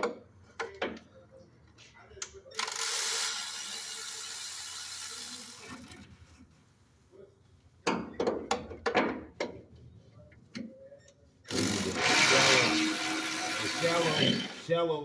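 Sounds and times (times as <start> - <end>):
ratchet wrench clicking: 2.6 - 6.0, 11.5 - 14.7.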